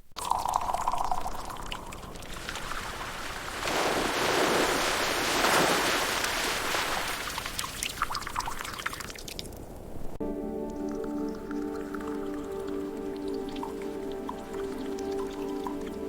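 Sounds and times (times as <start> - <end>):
drips: 0.2 - 9.6, 10.5 - 16.0
liquid pouring and splashing: 0.2 - 9.6, 10.8 - 16.0.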